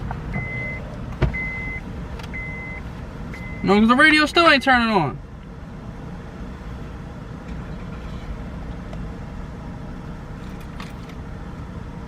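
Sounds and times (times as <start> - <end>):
car low rumble: 0.0 - 12.0.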